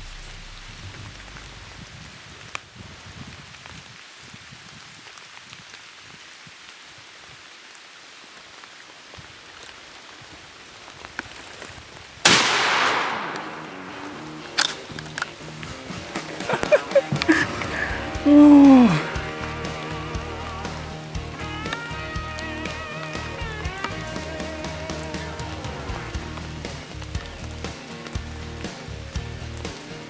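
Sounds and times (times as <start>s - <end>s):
rain pattering: 0.0s - 30.0s
shotgun blast: 12.2s - 14.9s.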